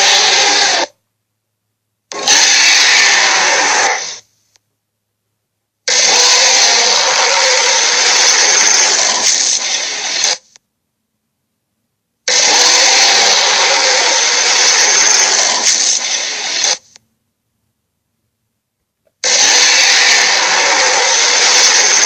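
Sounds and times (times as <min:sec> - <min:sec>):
harsh rasping monster noise: 0:00.0 - 0:01.0, 0:02.1 - 0:04.3, 0:05.9 - 0:10.5, 0:12.3 - 0:17.0, 0:19.2 - 0:22.0.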